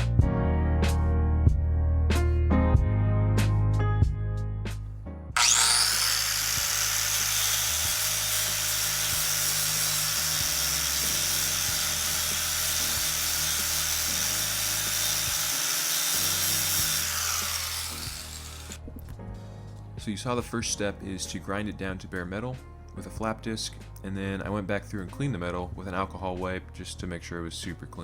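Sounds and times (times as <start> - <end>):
angle grinder grinding metal: 5.4 - 18.9.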